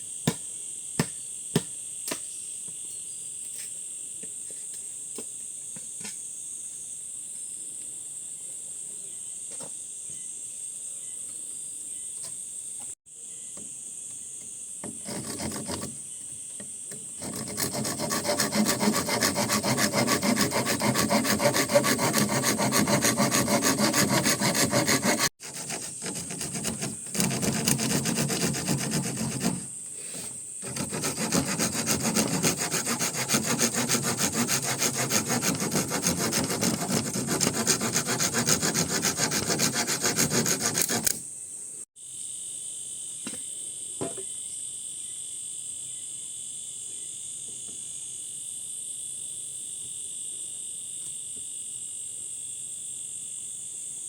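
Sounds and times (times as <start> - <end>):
wood being sawn: 14.8 - 16.0, 17.2 - 41.2.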